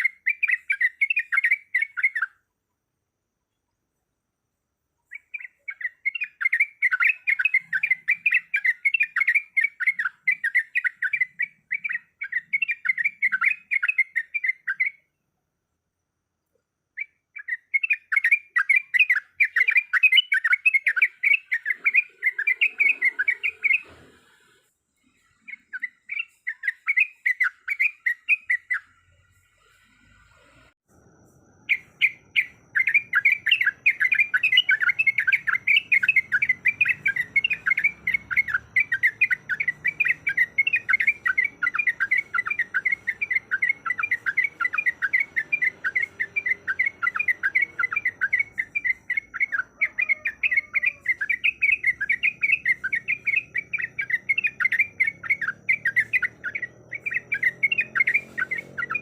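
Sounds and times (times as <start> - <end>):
bird chattering call: 17.4 - 24.0, 31.7 - 59.0.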